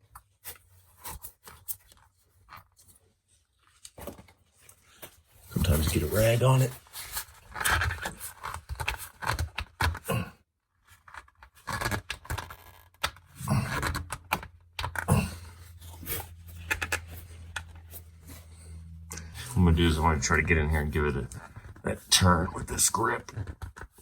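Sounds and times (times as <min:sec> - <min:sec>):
low steady hum: 0:14.8 - 0:23.5.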